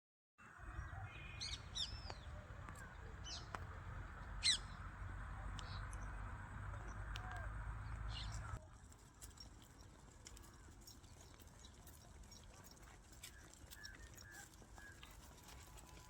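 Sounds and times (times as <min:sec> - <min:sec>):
bird chirps and calls: 0:04.4 - 0:04.8.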